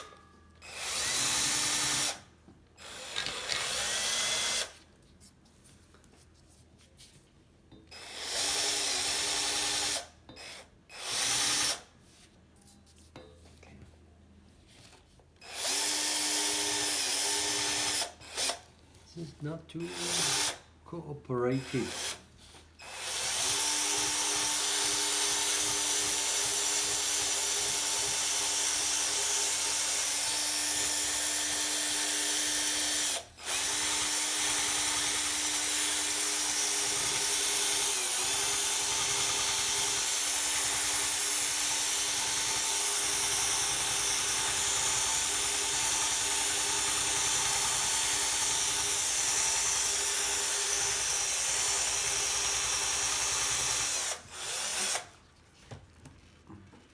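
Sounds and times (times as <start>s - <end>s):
electric rotary power tool running: 23.0s - 55.0s.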